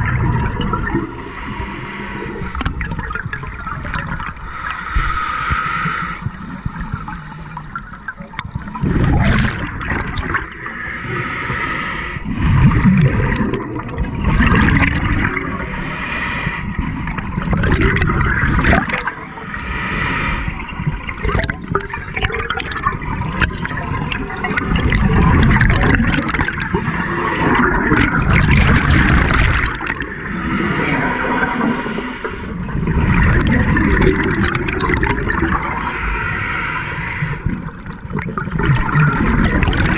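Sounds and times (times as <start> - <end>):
bubbles gurgling underwater: 0.0 - 4.6, 7.6 - 11.2, 12.2 - 15.7, 16.7 - 19.5, 20.6 - 36.1, 37.2 - 39.9
regulator inhale hiss: 1.1 - 2.8, 4.5 - 8.0, 10.7 - 12.3, 15.4 - 16.9, 19.2 - 20.9, 26.6 - 27.8, 30.0 - 32.7, 35.5 - 37.6.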